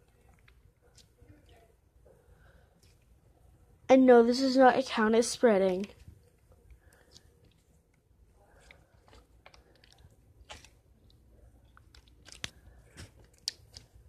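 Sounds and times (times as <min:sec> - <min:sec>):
slime being squished: 0:06.8 - 0:14.0.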